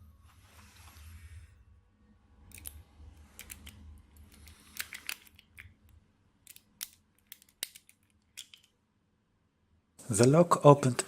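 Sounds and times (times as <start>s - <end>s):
lock picks clicking in lock: 2.5s - 5.8s, 6.4s - 8.7s.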